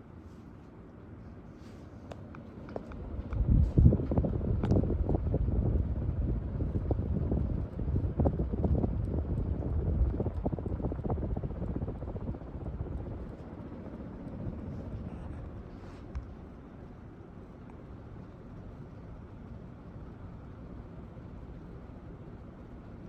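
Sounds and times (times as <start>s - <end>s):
ceiling fan whooshing drone: 0.0s - 23.0s
fan ticking and knocking: 2.2s - 16.3s.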